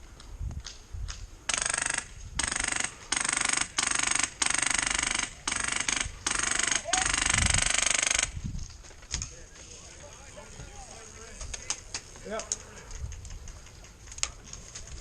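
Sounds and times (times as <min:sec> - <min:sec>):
airsoft gun firing bursts: 0:01.5 - 0:08.4.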